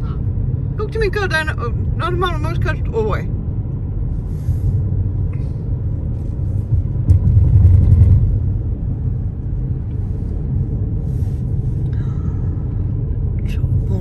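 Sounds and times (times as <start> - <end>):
car road rumble: 0.0 - 14.0.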